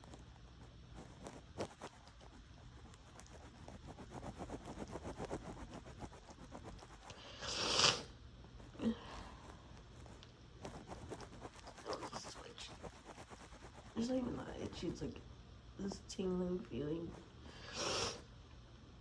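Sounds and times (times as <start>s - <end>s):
heavy breathing: 8.7s - 9.8s.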